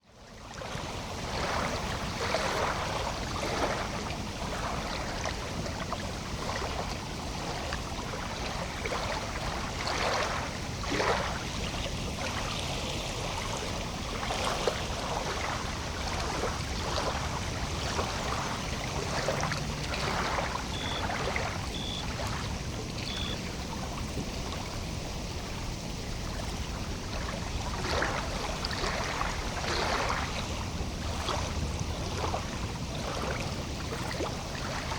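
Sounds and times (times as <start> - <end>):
water lapping: 0.3 - 34.9
short high chirps: 20.7 - 21.1, 21.7 - 22.1, 23.0 - 23.4.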